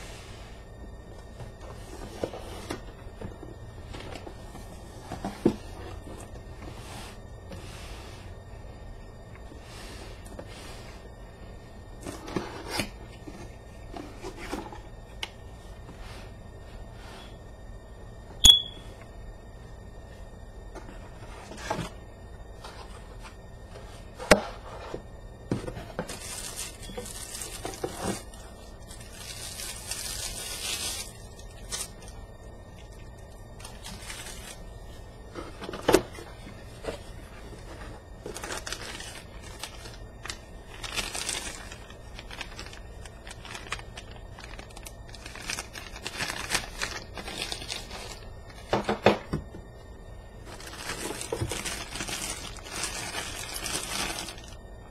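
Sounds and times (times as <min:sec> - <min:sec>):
plastic and paper crinkling: 0:22.6 - 0:49.3, 0:50.4 - 0:54.6.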